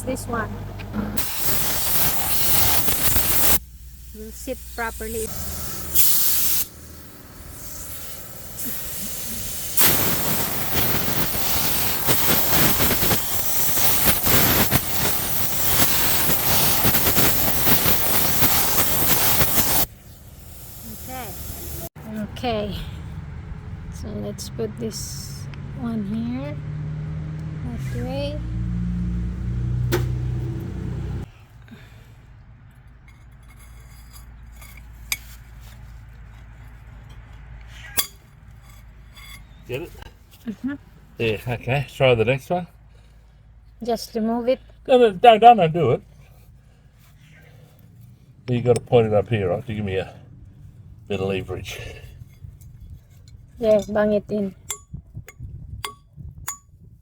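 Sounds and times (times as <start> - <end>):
diesel engine running: 0.0 - 33.2, 46.0 - 54.7
pressure washer jet hissing: 1.2 - 21.9.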